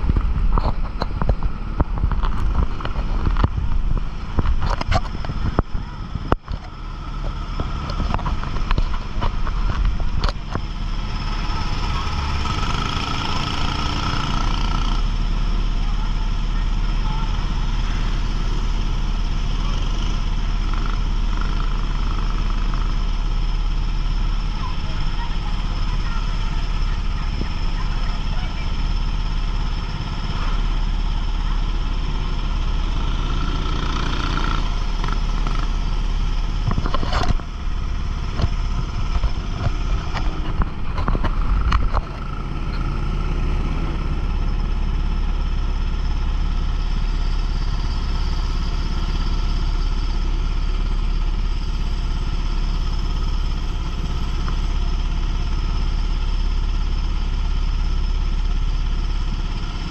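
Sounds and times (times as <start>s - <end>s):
sharp knocks and rattles: 0.0s - 11.5s, 32.9s - 43.1s
kart engine running: 0.0s - 59.9s
road and wind noise: 0.0s - 59.9s.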